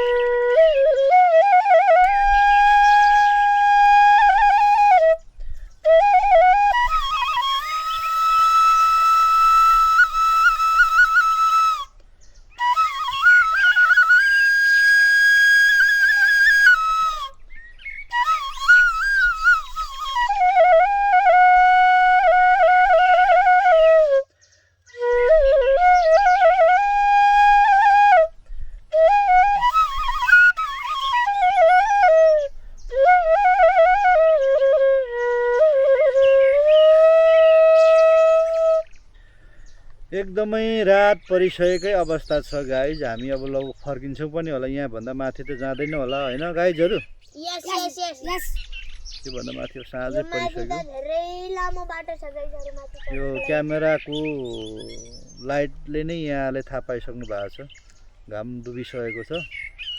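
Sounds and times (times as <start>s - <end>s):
flute melody with trills: 0.0s - 39.0s, 47.6s - 48.7s, 49.5s - 50.9s.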